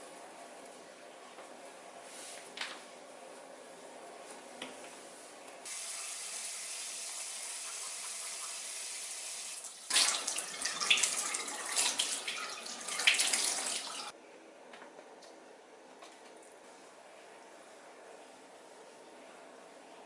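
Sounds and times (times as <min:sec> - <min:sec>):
tap water running into sink: 0:05.7 - 0:14.1.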